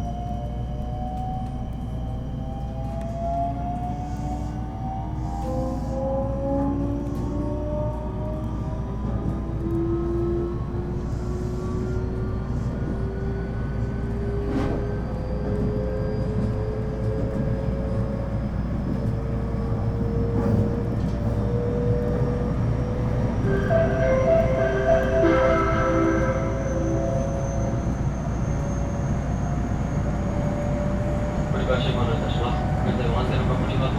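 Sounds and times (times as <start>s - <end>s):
wheels rumbling on rail: 0.0s - 33.9s
pulsing ringing tone: 23.4s - 29.1s.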